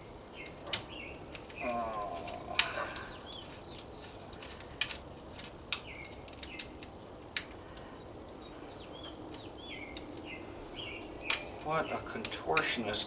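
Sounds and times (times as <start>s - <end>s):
small bird chirping: 0.0s - 4.3s, 5.8s - 6.8s, 7.9s - 12.9s
sharp clicks: 11.2s - 12.8s.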